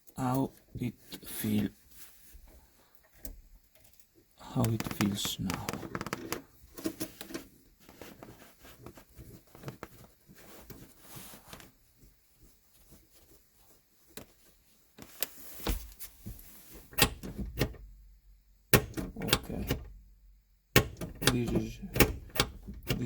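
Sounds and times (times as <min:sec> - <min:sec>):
gear lever clicks and knocks: 0:17.0 - 0:17.9, 0:18.8 - 0:20.0, 0:20.8 - 0:23.0.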